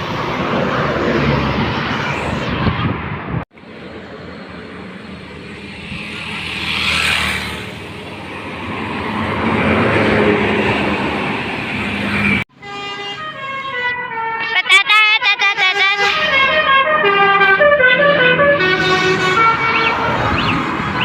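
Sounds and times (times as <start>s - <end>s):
large vehicle passing: 0.0s - 12.4s, 16.1s - 21.0s
bus musical horn: 12.5s - 21.0s.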